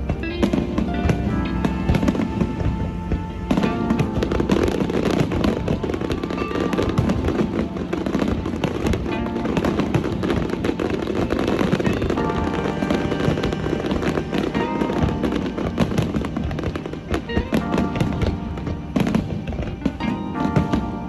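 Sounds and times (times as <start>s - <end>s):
fireworks bursting and crackling: 0.0s - 21.0s
music playing: 0.0s - 21.0s.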